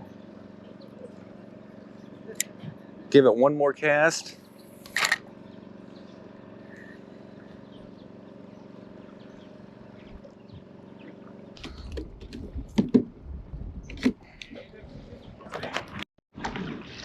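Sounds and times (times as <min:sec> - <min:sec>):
low mechanical hum: 0:00.0 - 0:17.0
wind rumbling on microphone: 0:11.6 - 0:17.0.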